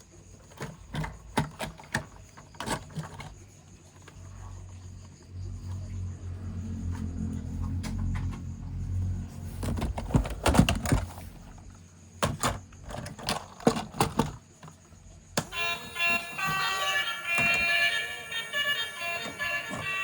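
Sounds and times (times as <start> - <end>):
plastic toys clicking and knocking: 0.0 - 4.3, 9.6 - 11.2, 12.2 - 20.0
toy electronic siren: 15.4 - 20.0.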